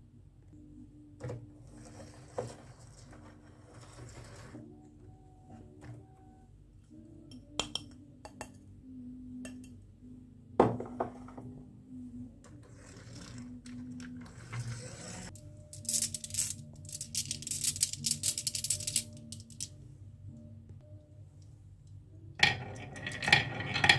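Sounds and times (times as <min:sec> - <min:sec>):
clinks of small hard objects: 0:15.7 - 0:19.7.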